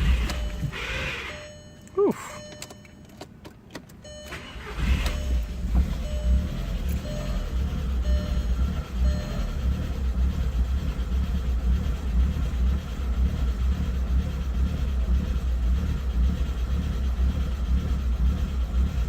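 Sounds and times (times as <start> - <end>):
car engine idling unevenly: 0.0 - 19.0.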